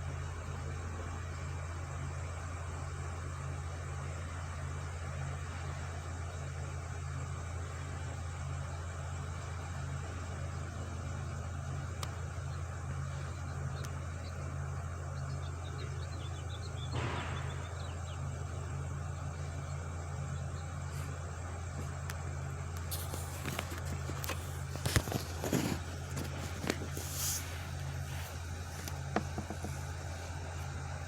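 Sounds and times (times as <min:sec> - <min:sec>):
truck engine droning: 0:00.0 - 0:31.0
sharp knocks and bangs: 0:16.9 - 0:18.1.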